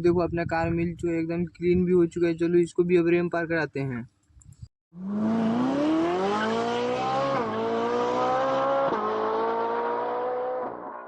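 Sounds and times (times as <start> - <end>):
car engine accelerating: 5.0 - 11.0.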